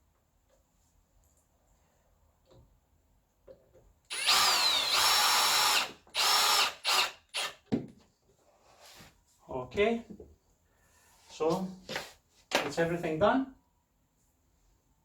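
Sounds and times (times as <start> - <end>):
power drill driving a screw: 4.1 - 7.6.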